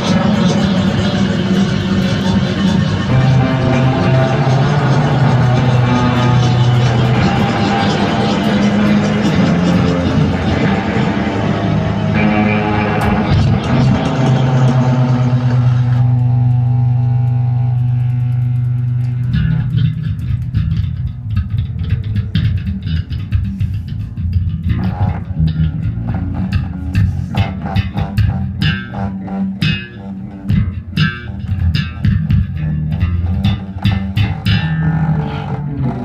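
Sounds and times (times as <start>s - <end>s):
low drone: 0.0s - 21.3s
low plucked notes: 0.0s - 36.0s.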